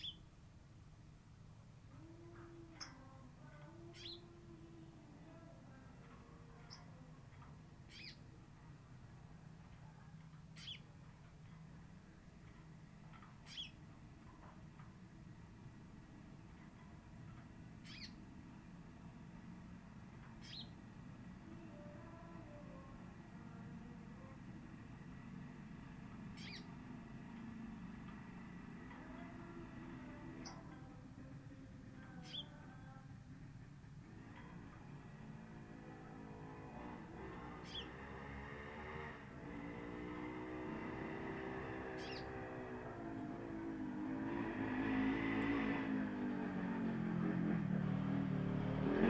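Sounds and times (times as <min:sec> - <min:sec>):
bird calling: 0:00.0 - 0:00.3, 0:02.1 - 0:04.4, 0:07.9 - 0:08.3, 0:10.6 - 0:10.9, 0:13.4 - 0:13.8, 0:17.8 - 0:18.2, 0:26.4 - 0:26.7, 0:32.2 - 0:32.6, 0:42.0 - 0:42.3
faint low hum: 0:00.0 - 0:49.0
low background noise: 0:00.0 - 0:49.0
short high bird calls: 0:07.9 - 0:08.2, 0:10.6 - 0:10.9, 0:13.5 - 0:13.8, 0:17.8 - 0:18.2, 0:26.4 - 0:26.7.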